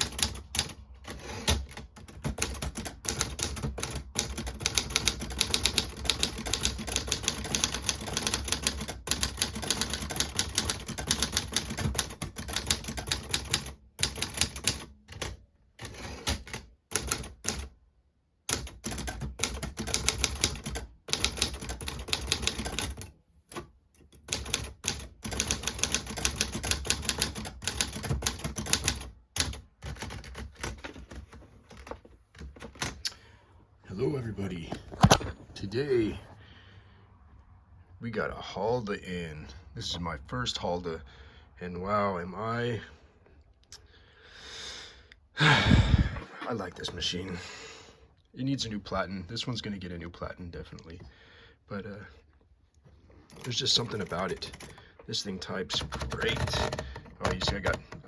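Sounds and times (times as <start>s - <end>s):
typewriter keystroke clacks: 0.0s - 17.7s, 18.5s - 33.0s, 55.6s - 58.0s.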